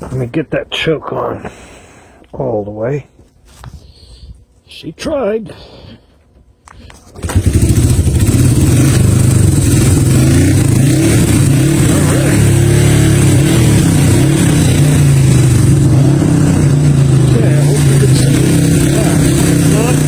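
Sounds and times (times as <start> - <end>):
motorcycle engine starting and running: 6.8 - 20.0.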